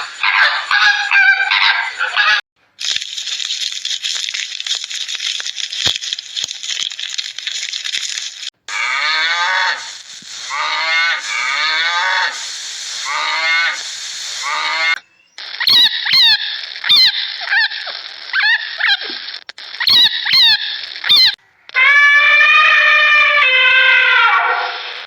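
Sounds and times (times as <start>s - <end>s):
crackling hiss: 0.0s - 21.8s, 23.2s - 25.0s
cow mooing: 8.7s - 9.9s.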